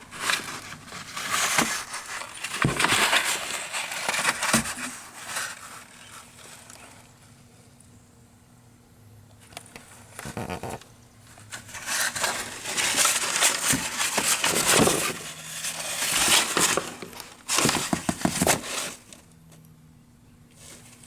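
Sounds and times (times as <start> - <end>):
kitten clawing cardboard box: 0.1 - 6.2, 11.5 - 19.2.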